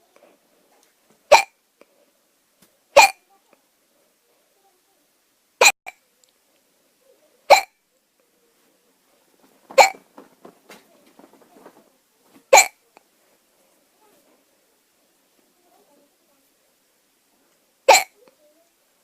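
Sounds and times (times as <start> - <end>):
person hiccuping: 1.3 - 1.6, 3.0 - 3.2, 7.5 - 7.8, 9.8 - 10.0, 12.5 - 12.8, 17.9 - 18.2
faint clicks: 6.2 - 6.7.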